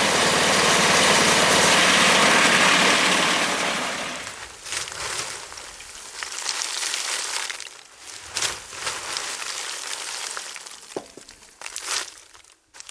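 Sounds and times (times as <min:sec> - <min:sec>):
wood chipper crackling: 0:00.0 - 0:04.4.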